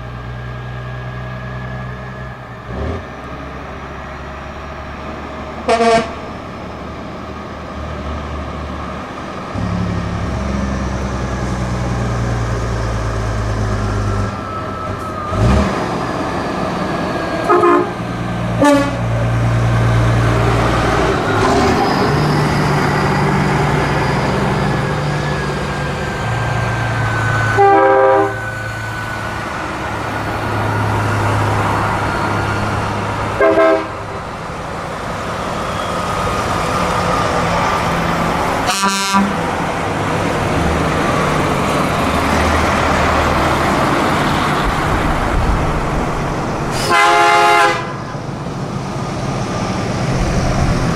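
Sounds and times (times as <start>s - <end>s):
trucks passing by: 0.0s - 50.9s
vehicle horn toots: 5.7s - 6.2s, 17.4s - 18.0s, 18.6s - 19.0s, 27.5s - 28.4s, 33.4s - 34.0s, 38.7s - 39.4s, 46.8s - 48.0s.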